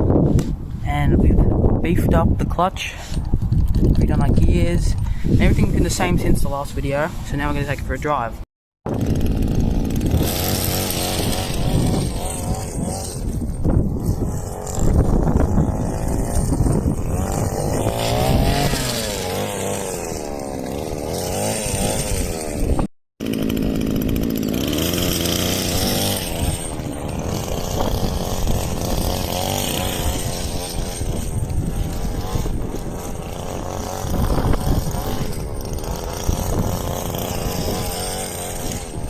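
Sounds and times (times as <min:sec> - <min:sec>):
rc car two-stroke engine revving: 0:08.9 - 0:39.0.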